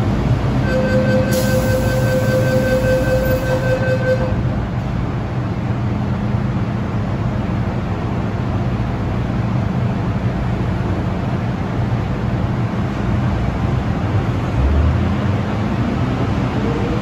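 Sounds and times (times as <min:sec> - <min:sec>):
train wheels rumbling: 0:00.0 - 0:08.4
steady high tone: 0:00.6 - 0:04.5.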